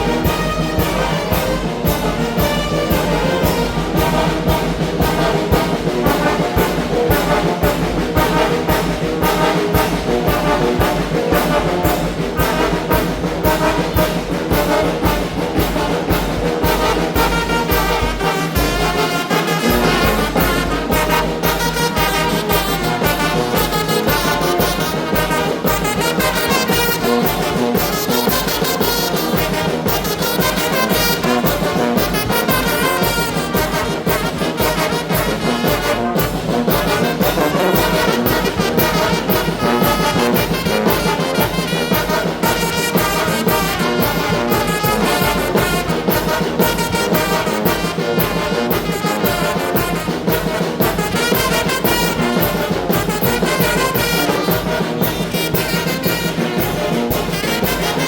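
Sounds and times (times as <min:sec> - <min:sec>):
brass band playing: 0:00.0 - 0:58.0
percussion beat: 0:00.0 - 0:58.0
trumpets and trombones: 0:00.0 - 0:58.0.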